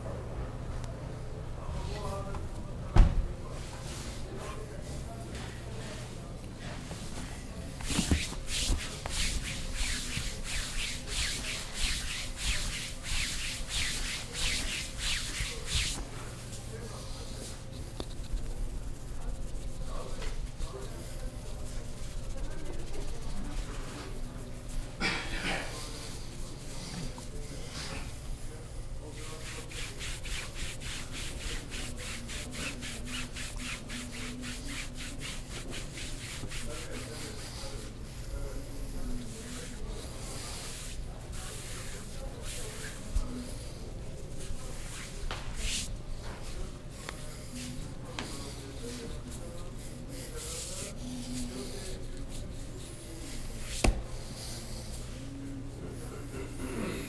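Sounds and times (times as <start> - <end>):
hands rubbing over skin: 6.8 - 25.0, 29.1 - 55.3.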